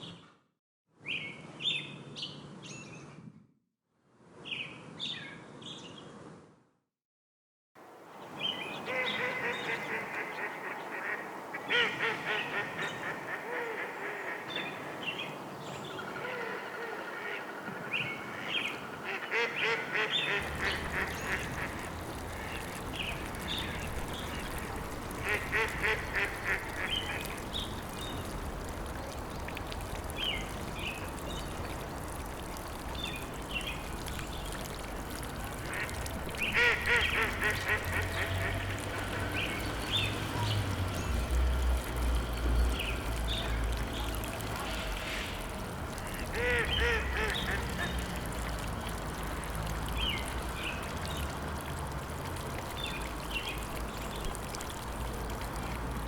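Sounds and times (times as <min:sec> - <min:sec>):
birds calling rapidly: 0:18.2 - 0:32.4, 0:33.0 - 0:44.3, 0:46.0 - 0:48.1.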